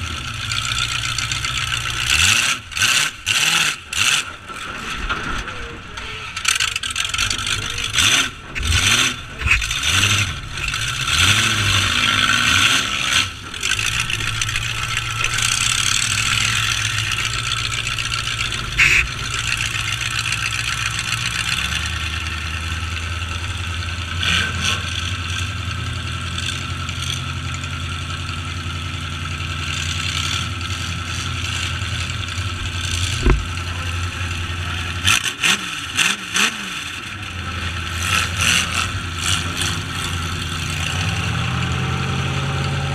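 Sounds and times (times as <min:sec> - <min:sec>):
truck engines revving: 0:00.0 - 0:42.9
sharp knocks: 0:32.5 - 0:33.7.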